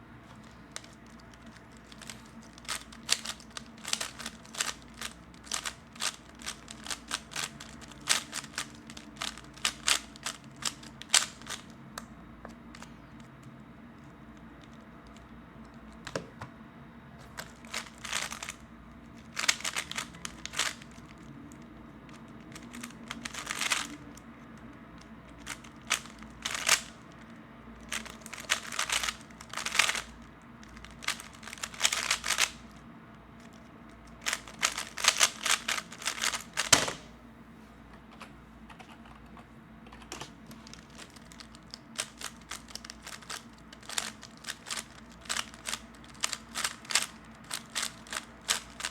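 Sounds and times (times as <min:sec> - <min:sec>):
plastic puzzle cube clicking: 0:00.8 - 0:11.7, 0:17.7 - 0:18.6, 0:19.4 - 0:21.0, 0:22.5 - 0:24.0, 0:25.4 - 0:27.0, 0:27.9 - 0:30.1, 0:30.7 - 0:32.6, 0:34.2 - 0:37.0, 0:40.2 - 0:48.9.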